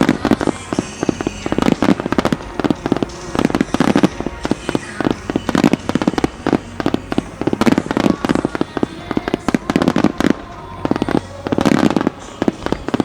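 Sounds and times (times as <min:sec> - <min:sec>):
firework shells bursting: 0:00.0 - 0:13.0.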